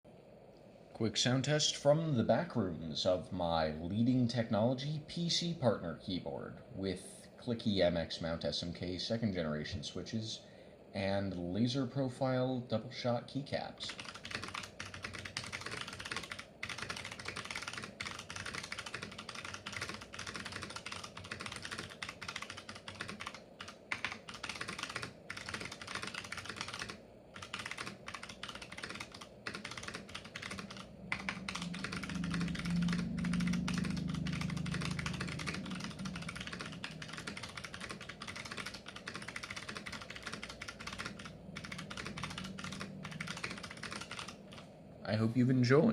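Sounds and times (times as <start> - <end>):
clicky keyboard typing: 13.9 - 44.7
low hum: 29.2 - 45.7.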